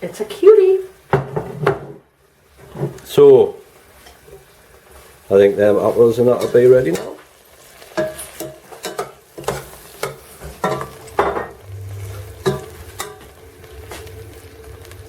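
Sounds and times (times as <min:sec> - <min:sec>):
faint sizzle: 0:00.0 - 0:15.0
utensil clinking on a saucepan: 0:07.9 - 0:11.6, 0:12.4 - 0:13.3.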